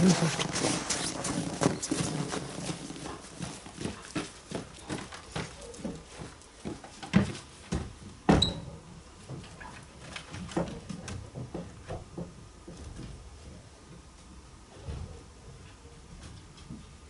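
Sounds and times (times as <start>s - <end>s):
knocks and thumps: 10.3s - 13.2s.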